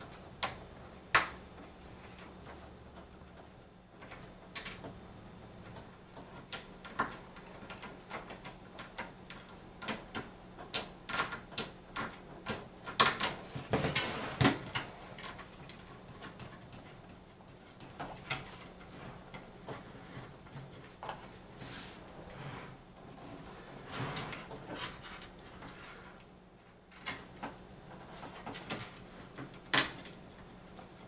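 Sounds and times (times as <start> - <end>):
clicks and taps of computer parts: 5.7 - 18.8.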